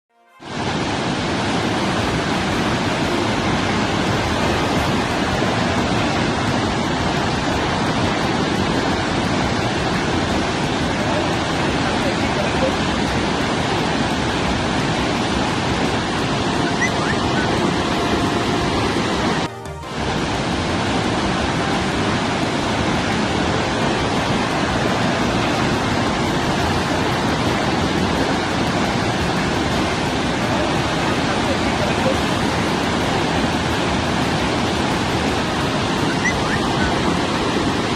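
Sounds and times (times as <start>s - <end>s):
river water rushing: 0.3s - 37.9s.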